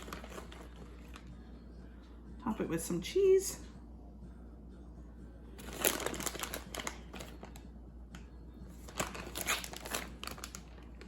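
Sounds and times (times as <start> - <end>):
cheese scattered by hand crinkling: 0.0 - 1.3, 5.6 - 7.6, 8.8 - 11.0.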